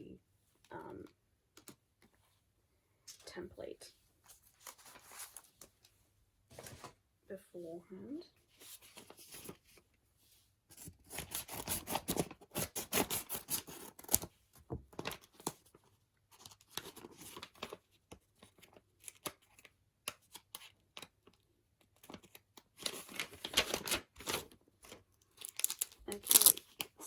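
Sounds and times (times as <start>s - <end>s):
card packaging rustling and tearing: 10.8s - 14.3s, 21.9s - 27.0s.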